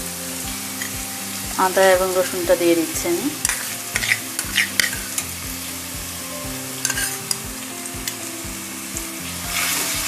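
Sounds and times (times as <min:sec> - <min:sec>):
meat sizzling in oil: 0:00.0 - 0:10.0
spatula scraping pan: 0:03.4 - 0:05.4, 0:06.8 - 0:07.4, 0:09.2 - 0:10.0.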